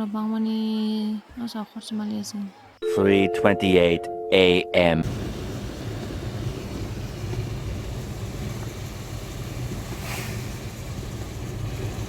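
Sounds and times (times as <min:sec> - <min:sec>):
vehicle engine hum: 0:05.0 - 0:12.0
brief hiss: 0:10.0 - 0:10.7.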